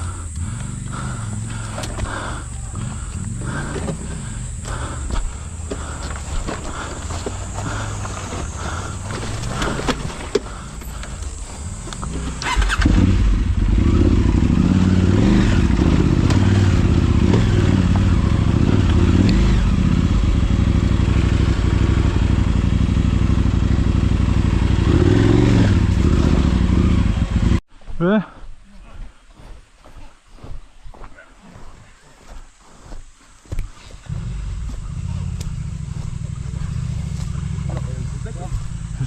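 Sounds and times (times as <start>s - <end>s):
vehicle engine starting and running: 0.0s - 27.6s, 34.1s - 39.0s.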